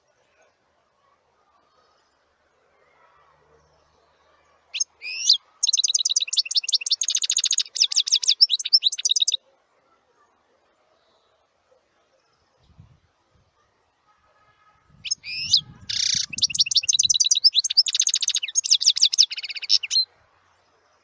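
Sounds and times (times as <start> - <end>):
songbird whistling and trilling: 4.8 - 9.4, 15.0 - 20.1.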